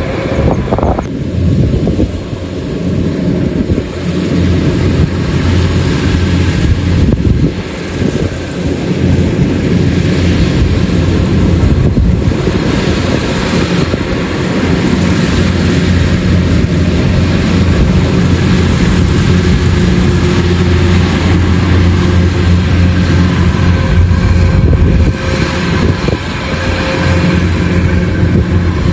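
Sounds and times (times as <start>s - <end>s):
combine harvester engine drone: 0.0s - 28.9s.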